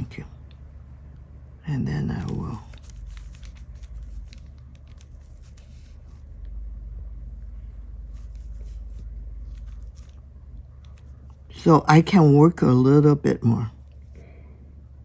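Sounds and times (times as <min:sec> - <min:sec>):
steady low hum: 0:00.0 - 0:15.0
brush strokes on paper: 0:07.2 - 0:10.2.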